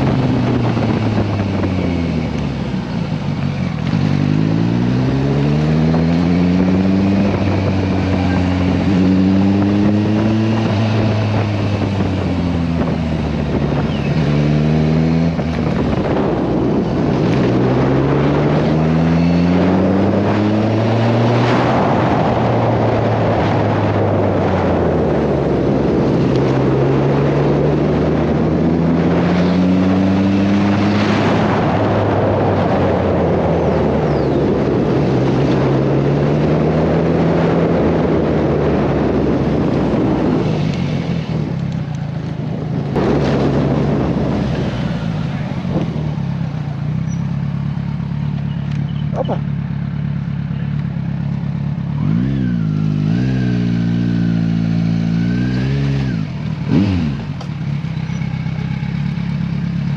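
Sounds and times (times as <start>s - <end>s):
wind on microphone: 0.0s - 2.8s, 3.9s - 47.3s
motorcycle engine running: 0.0s - 59.9s.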